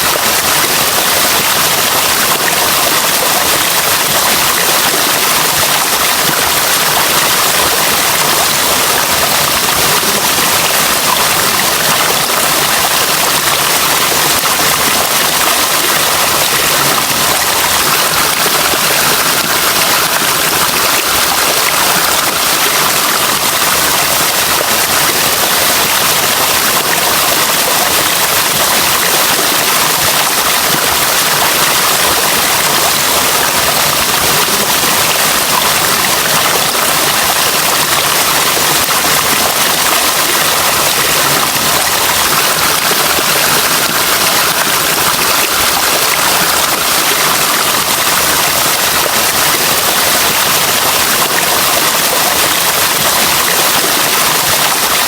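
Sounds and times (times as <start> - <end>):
running water rushing: 0.0 - 55.0.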